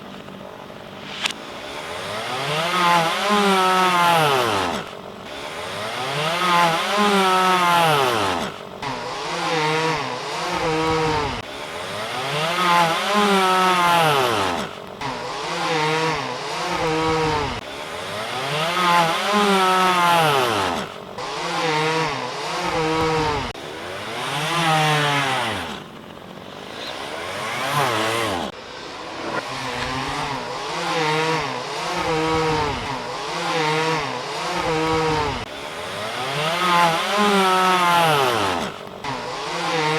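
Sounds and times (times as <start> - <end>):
chainsaw engine revving: 0.0 - 39.9.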